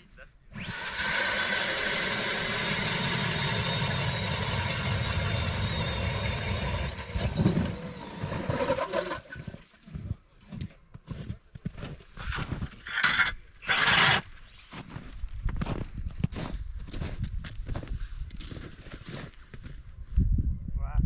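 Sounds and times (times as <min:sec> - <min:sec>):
engine running: 0:00.6 - 0:09.2.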